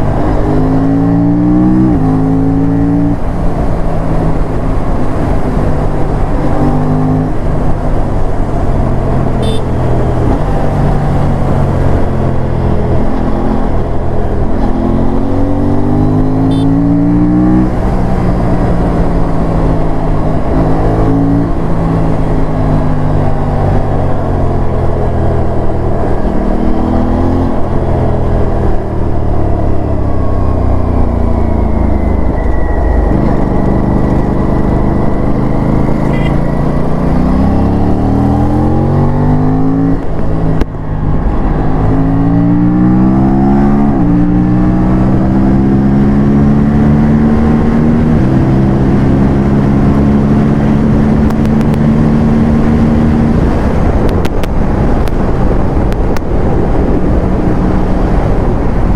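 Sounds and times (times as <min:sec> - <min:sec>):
heavy rushing wind noise: 0:00.0 - 0:58.9
motorcycle engine revving: 0:00.0 - 0:58.9.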